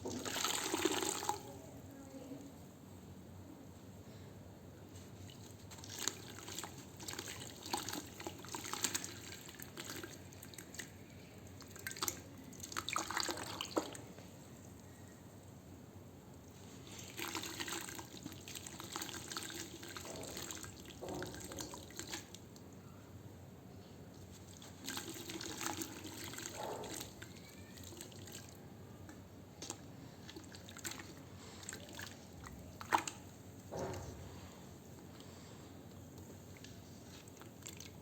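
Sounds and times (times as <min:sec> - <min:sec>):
water splashing and dripping: 0:17.1 - 0:22.4.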